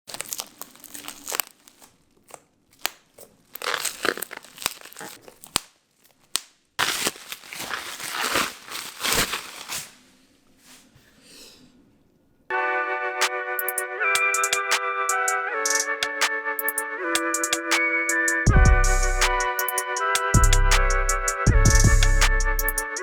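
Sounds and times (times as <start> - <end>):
material crinkling and rustling: 0.0 - 11.0.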